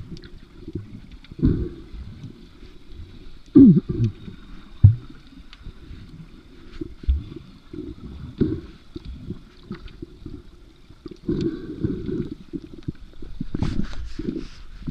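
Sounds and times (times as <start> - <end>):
faint clicks: 0.0 - 1.4, 3.3 - 6.2
muffled water sloshing and gurgling: 0.0 - 14.9.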